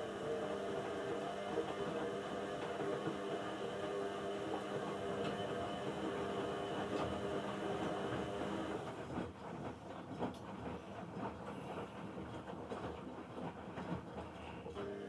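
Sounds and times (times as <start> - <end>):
washing machine drum motor humming: 0.0 - 9.9.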